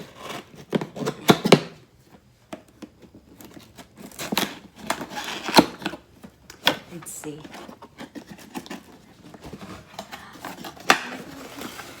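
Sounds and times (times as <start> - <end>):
packaging tearing and rustling: 7.6 - 12.0.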